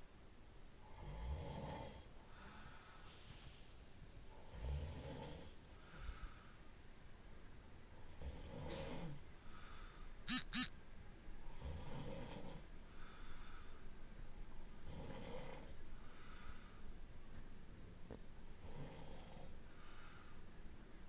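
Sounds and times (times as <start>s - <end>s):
short squeaky sounds: 10.3s - 10.7s.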